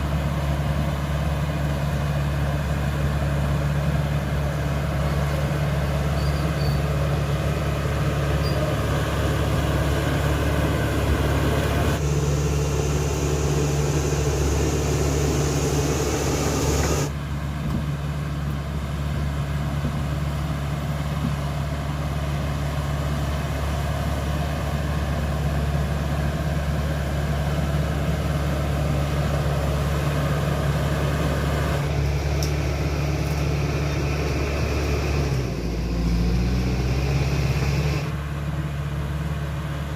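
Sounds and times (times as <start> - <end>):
bulldozer diesel engine drone: 0.0 - 39.9
higher machine noise: 8.5 - 17.2.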